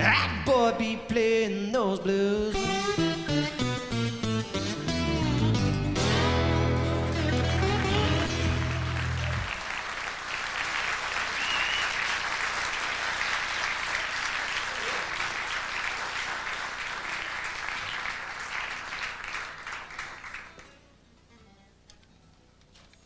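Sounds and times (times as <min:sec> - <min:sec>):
band last note: 0:02.7 - 0:09.5
audience applauding and cheering: 0:05.4 - 0:20.7
short whistle: 0:11.4 - 0:12.0.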